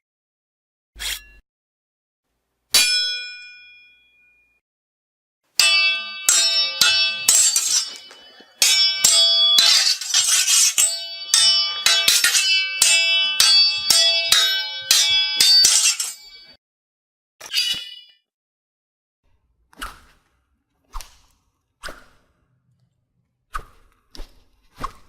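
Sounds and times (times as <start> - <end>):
sword blades clashing: 2.8 - 3.8, 5.6 - 16.6.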